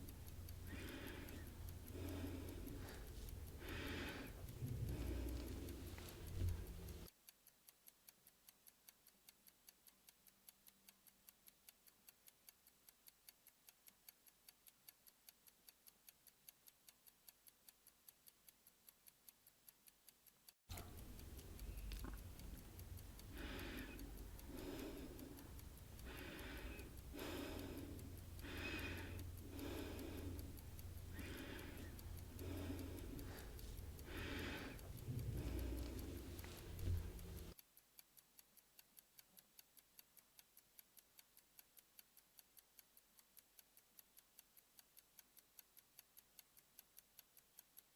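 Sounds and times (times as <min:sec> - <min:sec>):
soft breaths: 0:00.0 - 0:07.1, 0:20.7 - 0:37.6
clock ticking fast: 0:00.0 - 0:47.9
low hum: 0:20.7 - 0:37.5.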